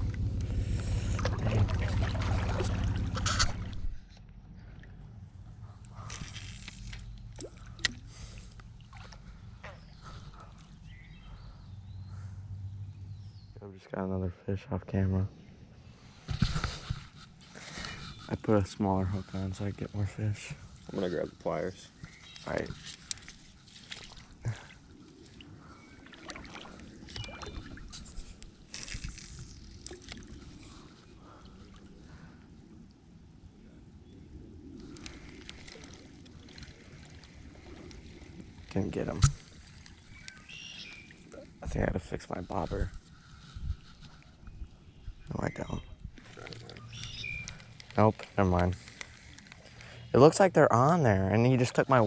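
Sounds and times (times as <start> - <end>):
low outdoor rumble: 0.0 - 23.6
low rumble of wind: 0.0 - 52.0
fishing gear clicking and rustling: 5.8 - 8.8, 22.0 - 24.4, 26.5 - 31.0, 34.8 - 41.0, 46.2 - 50.1.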